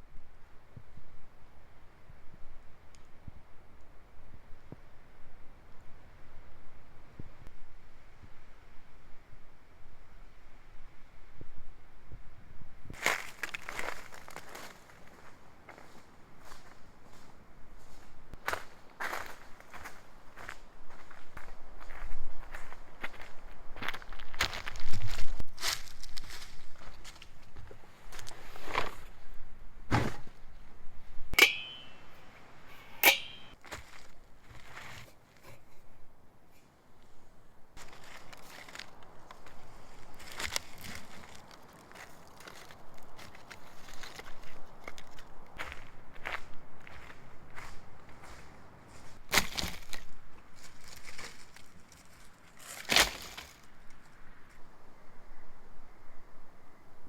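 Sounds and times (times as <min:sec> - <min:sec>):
light metallic clinks: 0:31.4 - 0:33.6.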